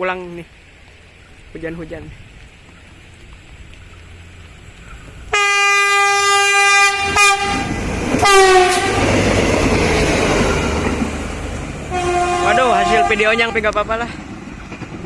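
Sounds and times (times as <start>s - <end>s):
train running past: 4.0s - 15.0s
train horn blasts: 5.3s - 9.1s, 11.9s - 13.6s.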